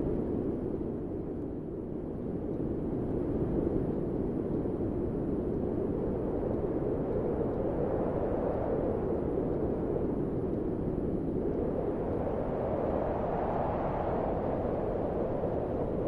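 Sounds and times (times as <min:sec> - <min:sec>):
low rush of wind: 0:00.0 - 0:16.0.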